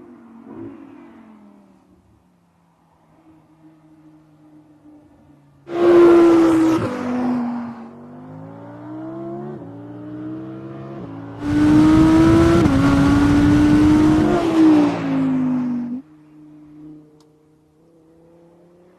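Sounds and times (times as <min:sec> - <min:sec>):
car engine accelerating hard: 0:08.4 - 0:15.9.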